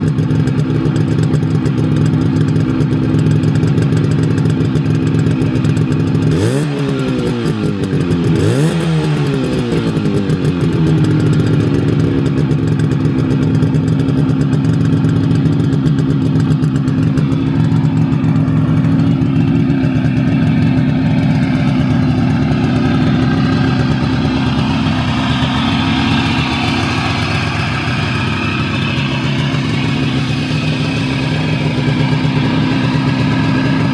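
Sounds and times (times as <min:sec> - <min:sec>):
motorcycle engine revving and idling: 0:00.0 - 0:33.9.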